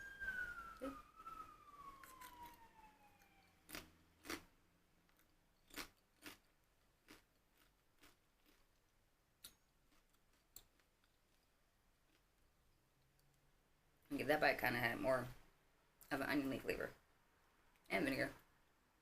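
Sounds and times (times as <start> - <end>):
ambulance siren: 0.0 - 4.1.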